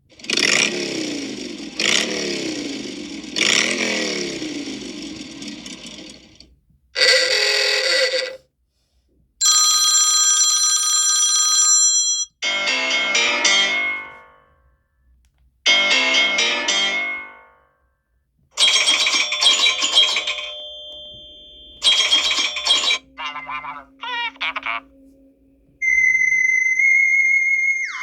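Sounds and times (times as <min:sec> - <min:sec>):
phone ringtones and alert tones: 0:18.6 - 0:28.0.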